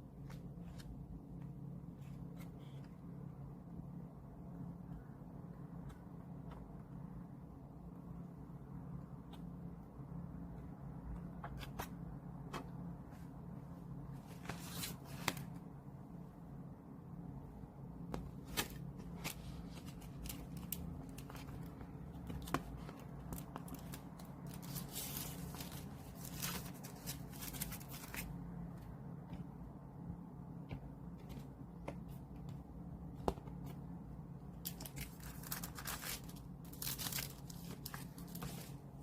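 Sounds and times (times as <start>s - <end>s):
low steady hum: 0.0s - 39.0s.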